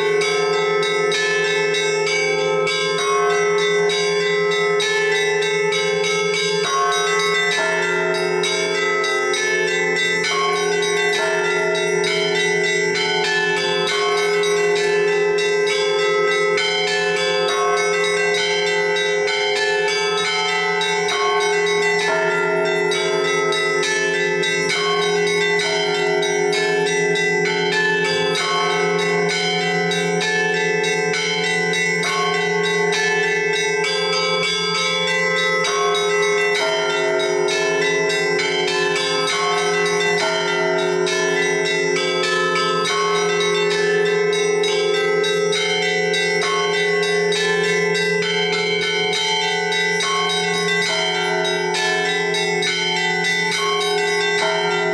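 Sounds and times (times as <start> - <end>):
large low bells: 0.0 - 54.9.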